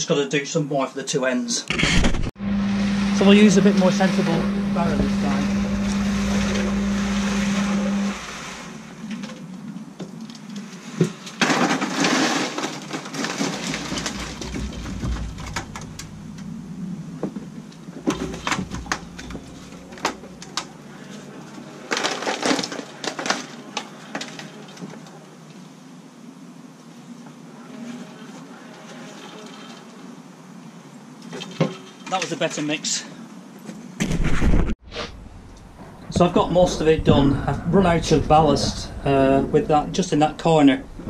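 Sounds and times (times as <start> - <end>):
concrete mixer humming: 2.4 - 9.3, 12.8 - 23.3, 34.8 - 41.0
scraping and knocking: 11.0 - 20.8, 34.4 - 41.0.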